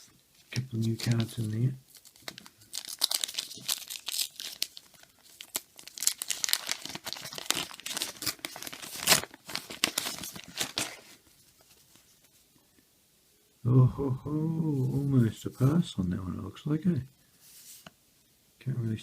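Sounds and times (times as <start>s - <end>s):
paper wrapper crinkling and tearing: 0.0s - 12.1s.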